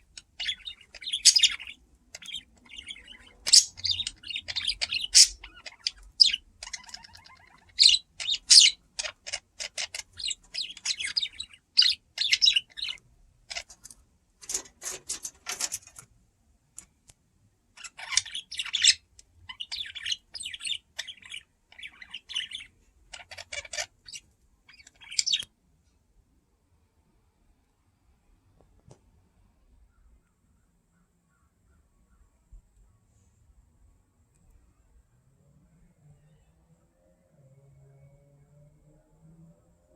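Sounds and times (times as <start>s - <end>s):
budgerigars chirping: 0.0s - 13.8s, 17.8s - 25.5s.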